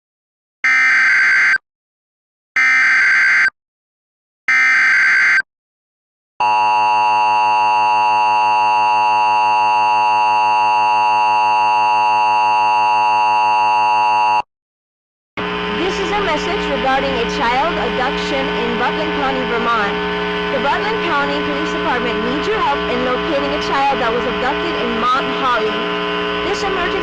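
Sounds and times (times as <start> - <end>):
buzzy digital data tones: 15.4 - 27.0
steady two-tone attention signal: 15.4 - 27.0.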